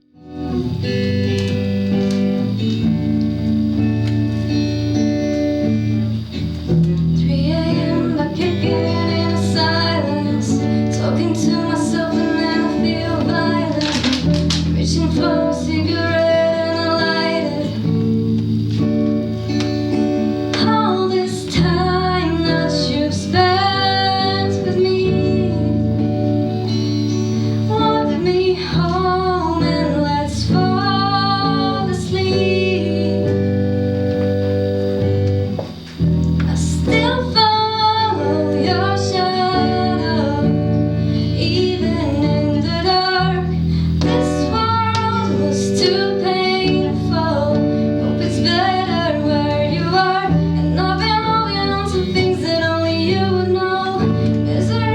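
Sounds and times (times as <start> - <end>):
plucked guitar: 0.0 - 54.9
woman singing: 7.1 - 18.4, 19.9 - 34.3, 36.4 - 54.9.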